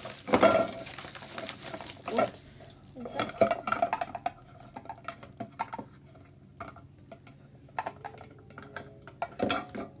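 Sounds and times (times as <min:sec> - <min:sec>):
hands opening a package: 0:00.0 - 0:02.9.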